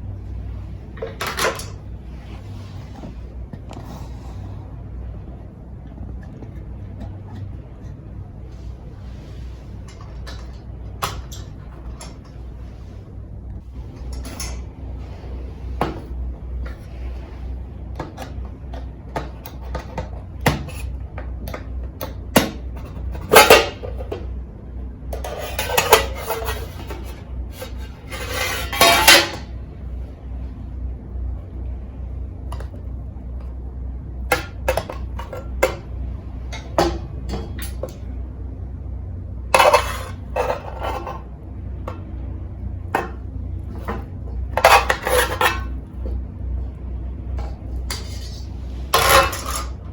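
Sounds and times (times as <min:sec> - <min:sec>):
low hum: 0:00.0 - 0:49.9
cutlery clinking on metal tin: 0:25.2 - 0:29.4.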